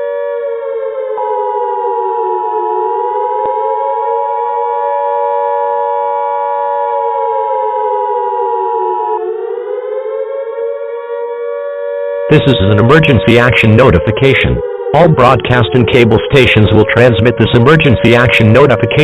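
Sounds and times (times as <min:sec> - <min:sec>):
civil defense siren wailing: 0:00.0 - 0:19.0
steady higher tone: 0:12.3 - 0:19.0.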